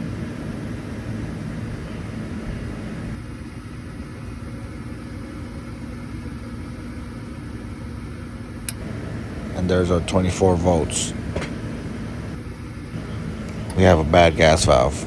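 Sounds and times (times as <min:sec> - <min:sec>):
furnace motor humming: 0:00.0 - 0:03.2, 0:08.6 - 0:15.0.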